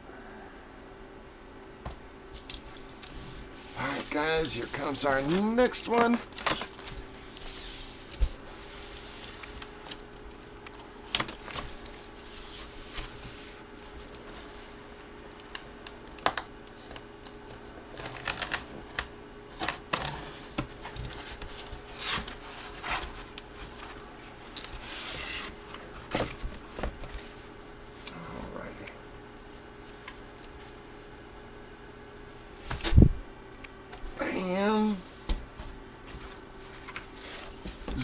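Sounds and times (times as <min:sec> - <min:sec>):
packaging rustling: 0:04.0 - 0:14.6.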